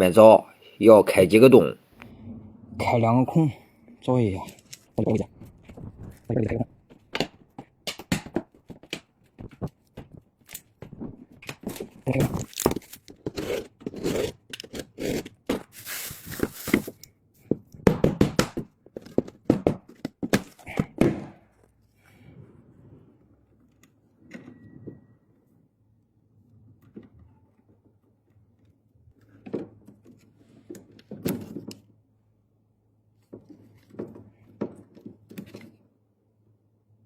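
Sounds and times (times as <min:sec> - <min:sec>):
knocks clicks and scrapes of hand work: 0:06.9 - 0:15.7, 0:16.7 - 0:21.3
rasping tearing noise: 0:12.2 - 0:16.9.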